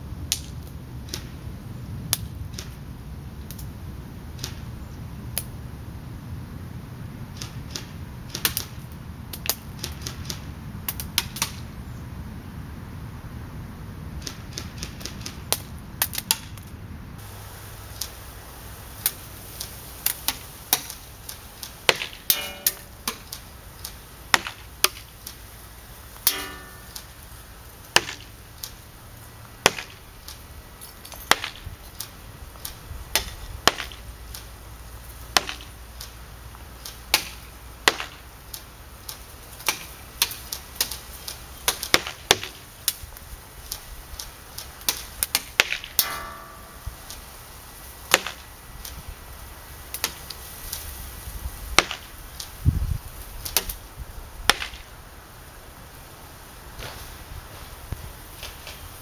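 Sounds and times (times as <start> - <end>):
pellets striking target: 21.6 - 23.5, 24.3 - 25.1, 26.2 - 27.3, 27.9 - 28.4, 29.6 - 30.0, 31.1 - 31.7, 33.1 - 34.0, 35.3 - 35.8, 37.1 - 38.2, 41.7 - 42.6, 44.8 - 47.4, 48.1 - 48.5, 51.8 - 52.1, 54.5 - 54.9
metal target ringing: 22.3 - 23.2, 26.3 - 27.2, 46.0 - 47.1.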